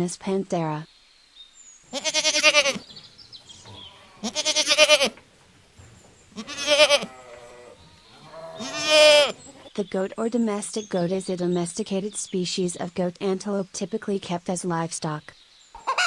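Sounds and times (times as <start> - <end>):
goat bleating: 1.9 - 2.9, 3.5 - 5.2, 6.3 - 9.7.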